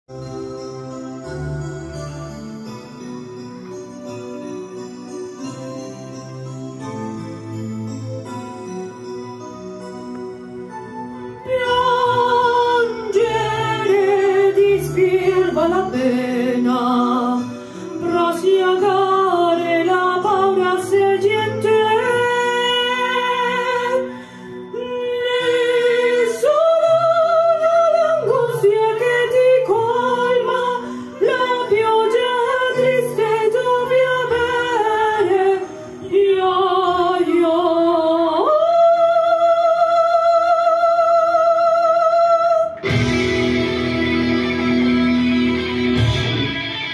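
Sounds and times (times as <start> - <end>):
person singing: 11.3 - 46.9
loud strummed guitar: 42.8 - 46.9
sparse guitar accompaniment: 42.8 - 46.9.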